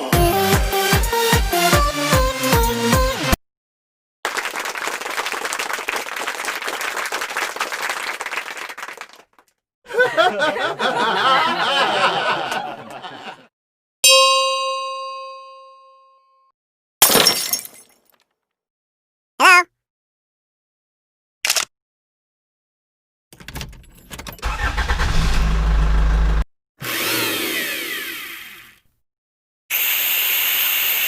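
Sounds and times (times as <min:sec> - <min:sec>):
bell-like ding: 0:14.0 - 0:16.4.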